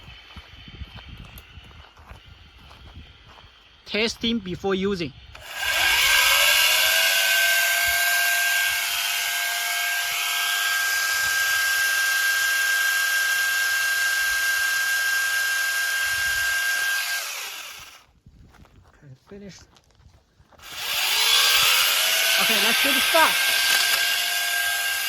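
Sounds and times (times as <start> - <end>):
electric pole pruner whining: 5.3 - 18.1, 20.6 - 25.0.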